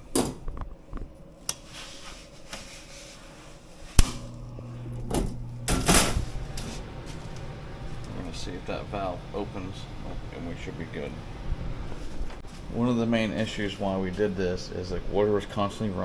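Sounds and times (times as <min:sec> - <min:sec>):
electrical hum: 0:00.0 - 0:16.0
sharp switch snap: 0:04.0 - 0:04.3.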